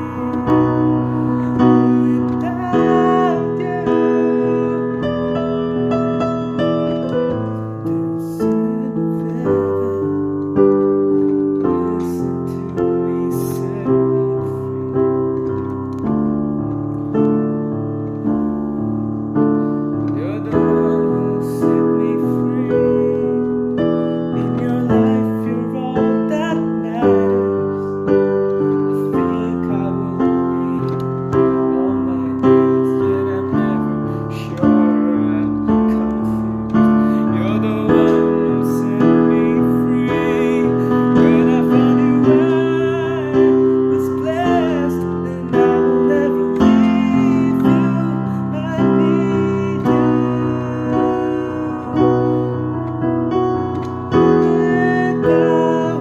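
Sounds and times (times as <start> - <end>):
solo piano ballad: 0.0 - 56.0.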